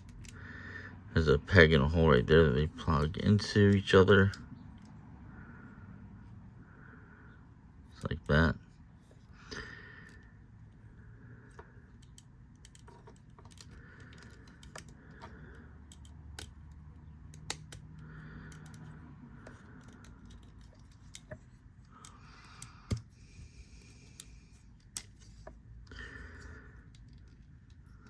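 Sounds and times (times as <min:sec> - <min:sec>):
plastic parts clicking into place: 0:11.5 - 0:18.9.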